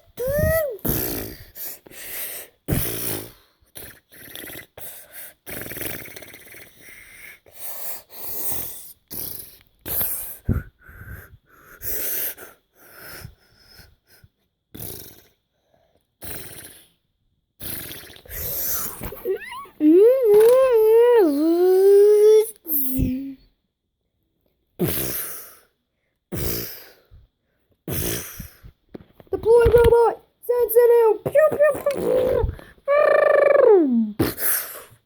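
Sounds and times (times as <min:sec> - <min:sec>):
child making mouth sound effects: 0:00.0 - 0:01.8, 0:17.6 - 0:23.4, 0:29.4 - 0:34.9.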